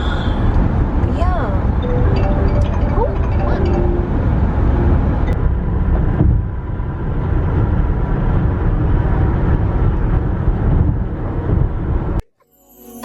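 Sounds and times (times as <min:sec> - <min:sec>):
road and wind noise: 0:04.3 - 0:12.2.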